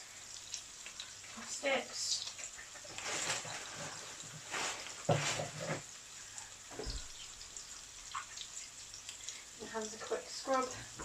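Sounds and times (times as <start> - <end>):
burgers sizzling in a frying pan: 0.0 - 11.0
kitchen knocks and clatters: 5.0 - 5.9.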